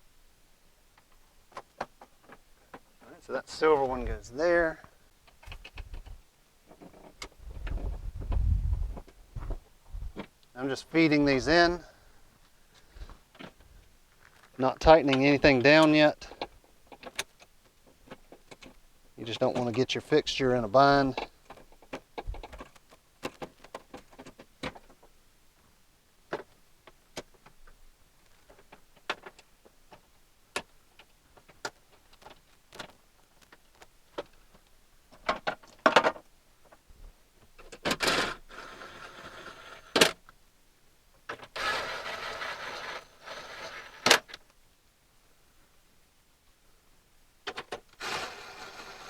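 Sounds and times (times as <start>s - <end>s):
small electric motor running: 41.6s - 44.1s, 48.0s - 49.0s.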